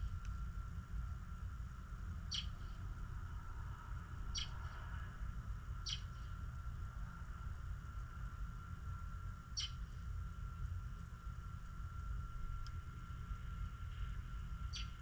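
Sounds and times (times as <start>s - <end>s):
steady low rumble: 0.0s - 15.0s
bird chirping: 2.3s - 2.7s, 4.3s - 4.6s, 5.8s - 6.2s, 9.6s - 9.8s, 14.7s - 15.0s.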